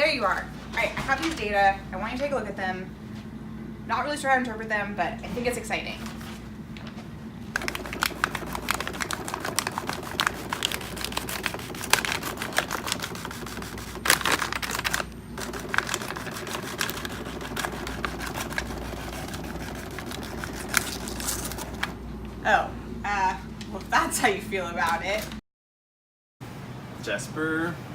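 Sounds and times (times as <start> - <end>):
typewriter typing: 7.6 - 21.9.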